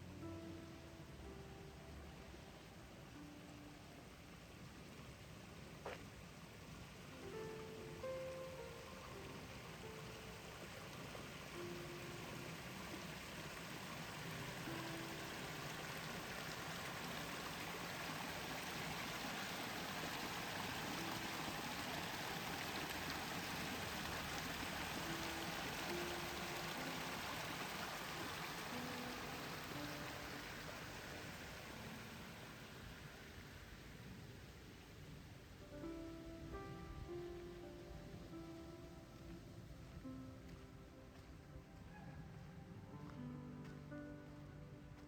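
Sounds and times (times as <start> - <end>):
quiet melody of held notes: 0.0 - 45.0
steady rain hiss: 0.0 - 45.0.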